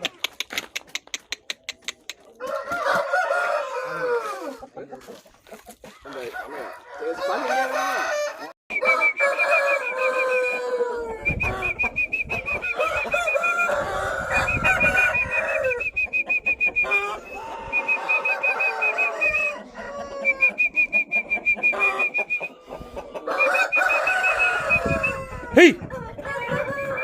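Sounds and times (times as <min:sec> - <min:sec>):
chickens clucking: 0:00.0 - 0:27.0
rooster crowing: 0:02.4 - 0:04.6, 0:06.1 - 0:11.8, 0:12.6 - 0:16.0, 0:16.8 - 0:20.7, 0:23.2 - 0:27.0.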